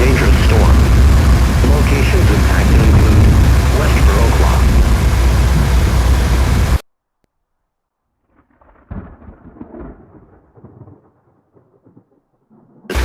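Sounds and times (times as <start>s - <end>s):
loud rushing storm noise: 0.0s - 6.8s
thunder rumbling: 0.0s - 6.8s, 8.6s - 13.0s.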